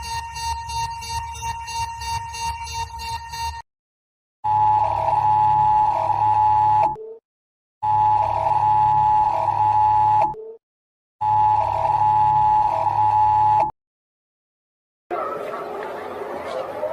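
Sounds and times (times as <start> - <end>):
emergency alert alarm tone: 0.0 - 3.6, 4.4 - 7.2, 7.8 - 10.6, 11.2 - 13.7.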